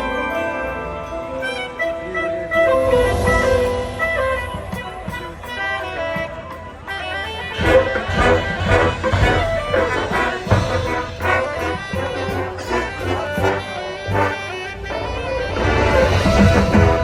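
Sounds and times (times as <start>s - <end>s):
brass section sustained chords: 0.0s - 17.0s
marching percussion beat: 7.6s - 14.4s, 16.0s - 17.0s.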